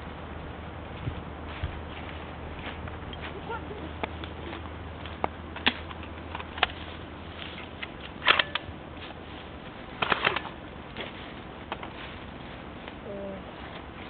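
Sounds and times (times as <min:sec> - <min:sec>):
sharp clicks and crackles: 0:07.4 - 0:08.7, 0:10.0 - 0:11.1.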